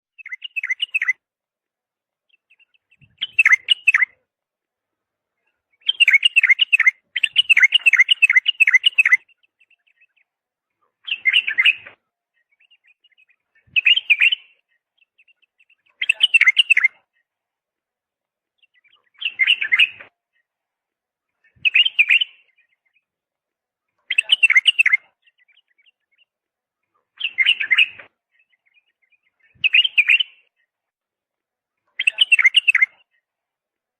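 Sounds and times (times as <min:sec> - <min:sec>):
bird chirping: 0:00.1 - 0:01.4, 0:02.2 - 0:04.4, 0:05.3 - 0:17.4, 0:18.4 - 0:30.9, 0:31.8 - 0:33.3.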